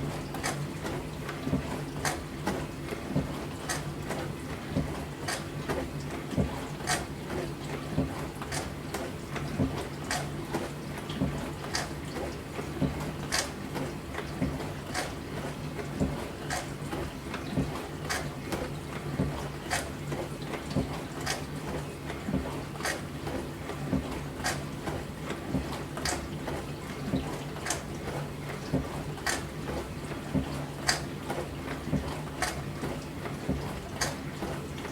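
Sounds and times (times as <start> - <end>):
dishwasher pump hum: 0.0 - 34.9
short sharp splashes or clacks: 12.8 - 13.5, 30.4 - 34.2.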